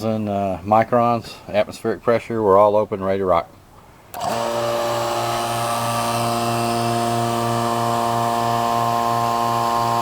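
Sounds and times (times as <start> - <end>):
vacuum pump running: 4.1 - 10.0.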